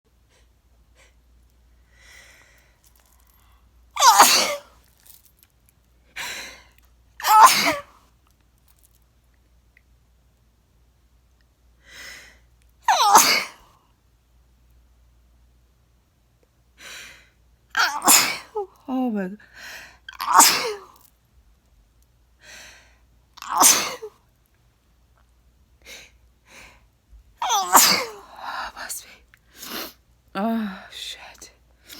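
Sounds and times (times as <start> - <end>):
person sneezing loudly: 4.0 - 4.7, 7.2 - 7.9, 12.9 - 13.6, 17.8 - 18.6, 20.2 - 21.0, 23.4 - 24.1, 27.4 - 28.3.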